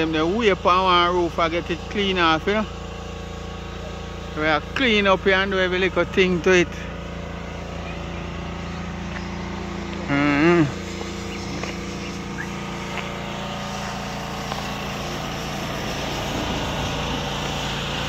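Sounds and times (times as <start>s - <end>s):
pressure washer engine running: 0.0s - 18.0s
water spray hissing: 10.0s - 18.0s
loud wavering call: 10.1s - 13.2s.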